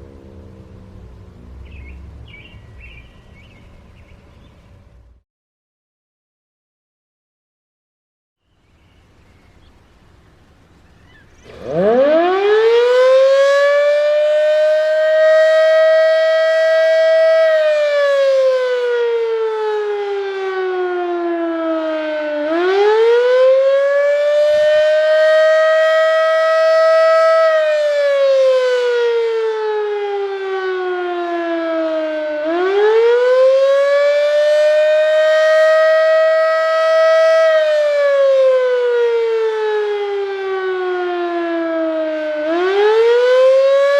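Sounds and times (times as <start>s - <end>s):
fire siren wailing: 11.4s - 43.9s.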